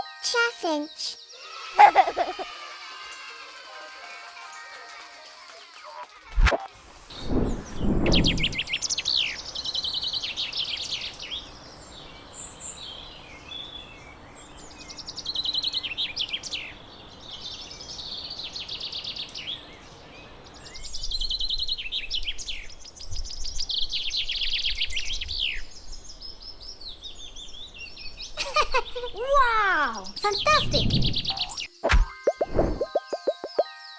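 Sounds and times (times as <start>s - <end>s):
background hiss: 6.4s - 32.9s
chaffinch singing: 7.8s - 33.9s
low thump: 30.9s - 32.9s
loud click: 31.8s - 32.1s.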